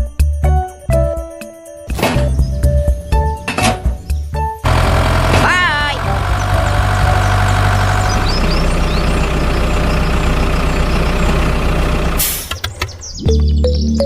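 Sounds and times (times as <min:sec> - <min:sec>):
music: 0:00.0 - 0:04.7, 0:05.3 - 0:09.2, 0:13.0 - 0:14.0
heavy vehicle engine running: 0:04.6 - 0:13.0
air brake hiss: 0:12.2 - 0:12.6.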